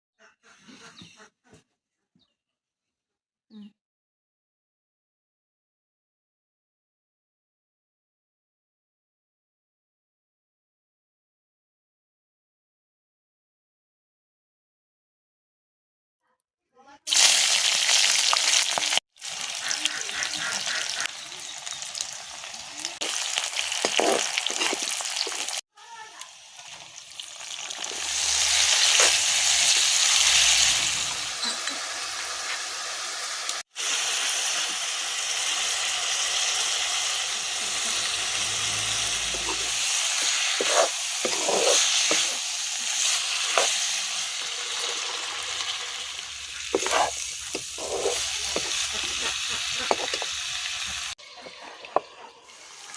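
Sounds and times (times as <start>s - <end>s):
food sizzling in hot oil: 17.1s - 52.9s
stirring in a pan: 23.0s - 25.6s, 27.8s - 31.9s, 36.6s - 52.9s.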